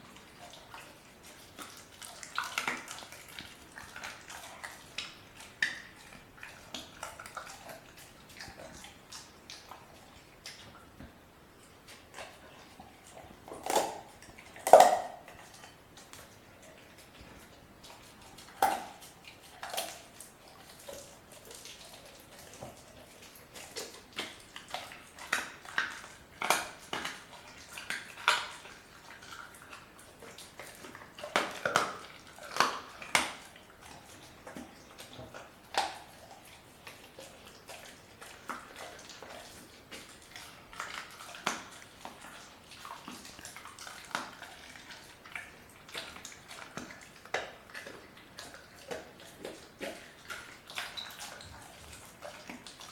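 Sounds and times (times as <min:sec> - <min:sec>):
wet chewing: 0:00.0 - 0:52.9
puppy crunching bone: 0:11.8 - 0:52.9.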